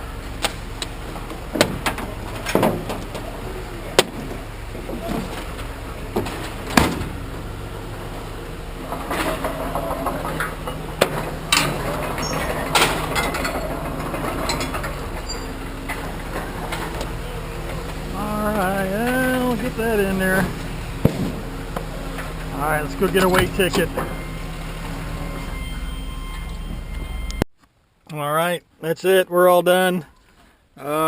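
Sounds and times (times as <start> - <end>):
steady low hum: 0.0 - 28.0
metal scraping and rattling: 0.4 - 27.1
scrap metal clanking: 1.5 - 26.9.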